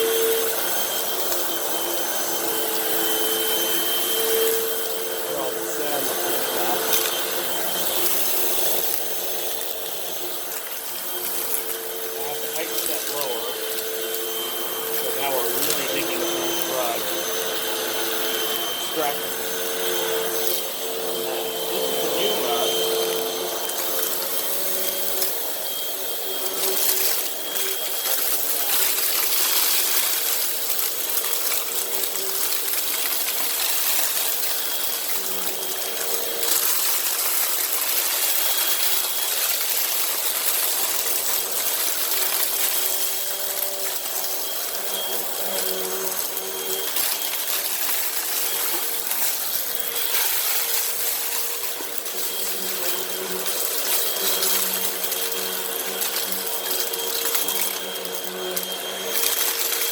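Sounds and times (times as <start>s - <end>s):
debris rattling through vacuum: 0.0s - 59.9s
upright vacuum running: 0.0s - 59.9s.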